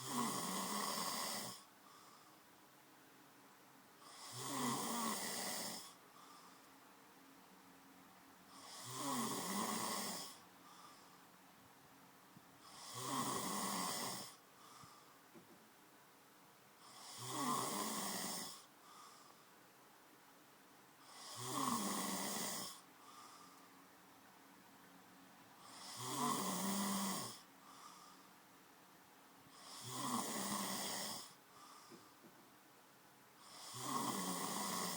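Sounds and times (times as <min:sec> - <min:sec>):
man snoring: 0:00.0 - 0:01.7, 0:04.0 - 0:06.0, 0:08.5 - 0:10.4, 0:12.6 - 0:14.4, 0:16.8 - 0:18.7, 0:21.0 - 0:22.9, 0:25.6 - 0:28.0, 0:29.5 - 0:31.4, 0:33.4 - 0:34.9.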